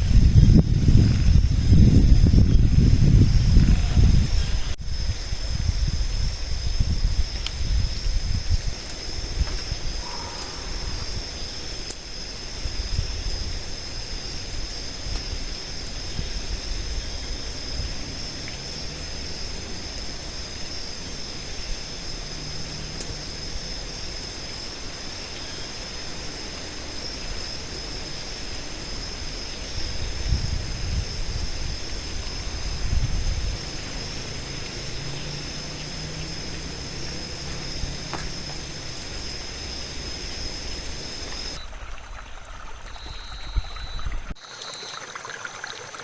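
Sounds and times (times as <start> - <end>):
strong wind on microphone: 0.0 - 21.1, 27.3 - 44.4.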